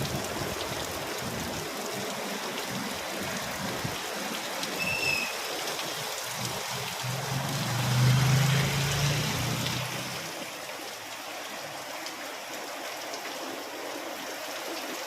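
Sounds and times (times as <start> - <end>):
heavy rain splashing: 0.0 - 15.0
brief high squeak: 4.8 - 5.4.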